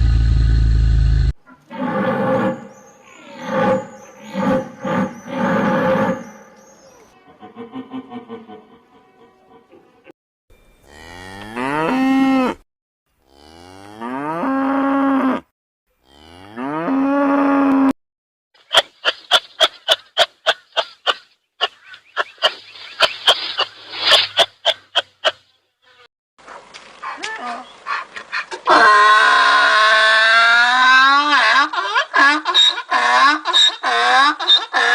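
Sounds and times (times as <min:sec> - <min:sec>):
cow mooing: 0:01.7 - 0:06.4, 0:10.8 - 0:12.6, 0:16.0 - 0:17.9.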